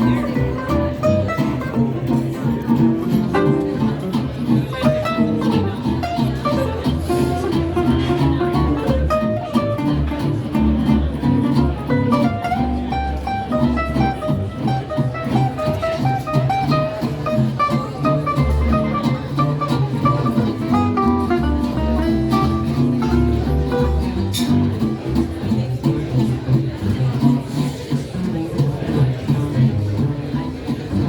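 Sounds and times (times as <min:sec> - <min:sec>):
jazz guitar melody: 0:00.0 - 0:31.0
bass line: 0:16.4 - 0:27.0.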